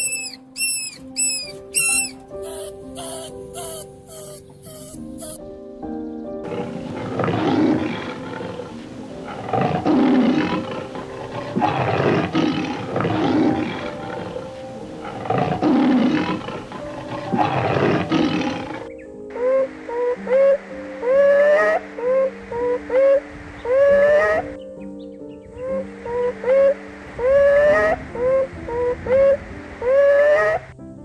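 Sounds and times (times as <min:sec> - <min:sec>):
animal hoarse calls: 0:00.0 - 0:05.4, 0:06.4 - 0:22.3
background music: 0:00.0 - 0:31.0.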